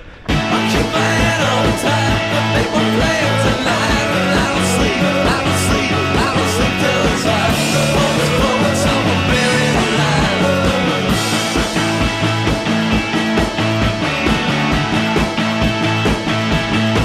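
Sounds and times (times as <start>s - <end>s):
person singing: 0.0s - 11.6s
rock music with drum beat: 0.1s - 17.0s.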